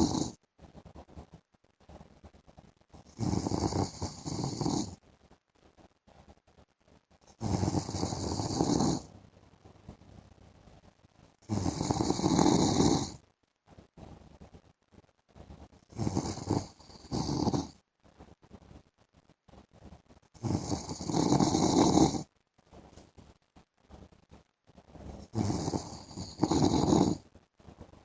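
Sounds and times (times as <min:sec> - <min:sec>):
man snoring: 0:00.0 - 0:00.4, 0:03.1 - 0:05.0, 0:07.4 - 0:09.1, 0:11.5 - 0:13.2, 0:15.9 - 0:17.7, 0:20.4 - 0:22.2, 0:25.2 - 0:27.2.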